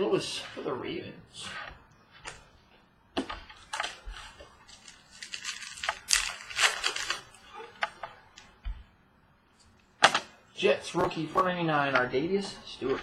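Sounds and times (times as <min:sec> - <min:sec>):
cards rustling and snapping: 0:03.6 - 0:08.5.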